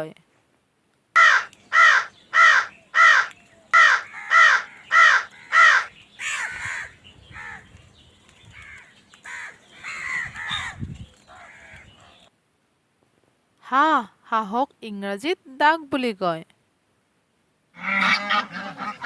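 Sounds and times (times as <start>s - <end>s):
crows cawing: 1.2s - 7.7s, 8.5s - 12.3s.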